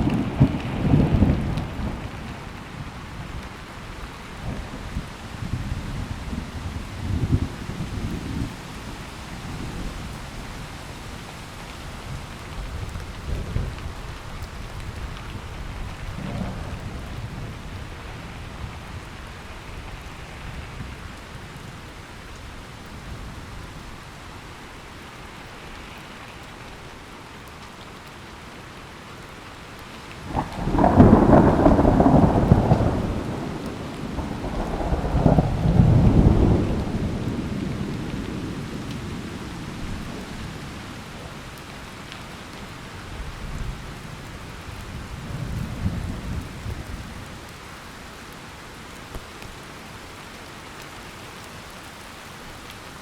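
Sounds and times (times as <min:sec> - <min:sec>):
thunder rumbling and cracking: 0:00.0 - 0:10.7, 0:12.1 - 0:20.9, 0:30.2 - 0:41.3, 0:43.2 - 0:47.3
steady rain: 0:00.0 - 0:53.0.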